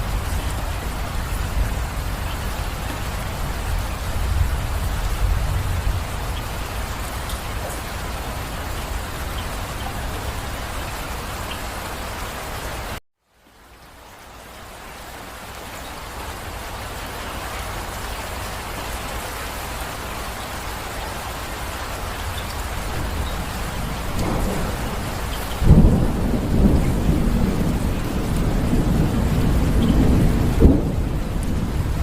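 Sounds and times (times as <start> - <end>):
thunder clap and rumbling: 0.0 - 12.2, 22.2 - 32.0
steady rain: 0.0 - 32.0.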